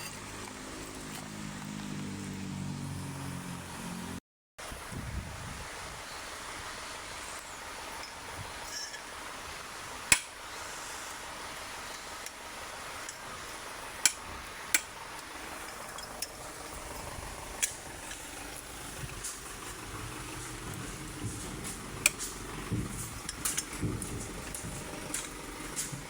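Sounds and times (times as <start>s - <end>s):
rain hissing: 4.6s - 26.0s
metal hand tools clinking: 8.6s - 9.1s, 20.4s - 26.0s.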